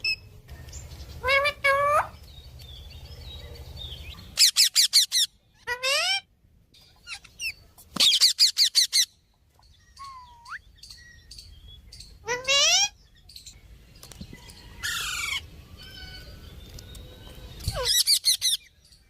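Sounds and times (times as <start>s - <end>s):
parakeet calling and chirping: 1.0s - 13.6s, 17.6s - 18.8s.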